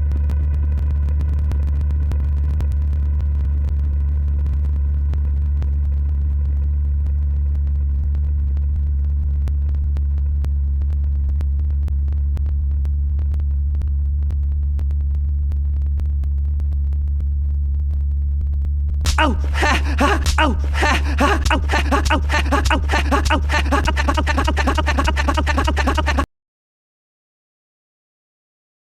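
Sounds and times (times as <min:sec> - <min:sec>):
person crying out: 0:19.1 - 0:26.3.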